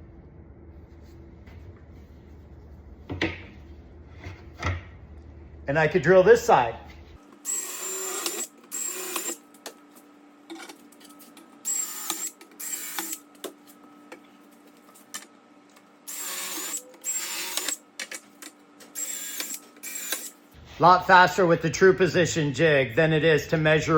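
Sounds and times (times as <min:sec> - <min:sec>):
power drill whining: 0:07.5 - 0:09.4, 0:11.7 - 0:13.2, 0:16.1 - 0:17.8, 0:19.0 - 0:20.4.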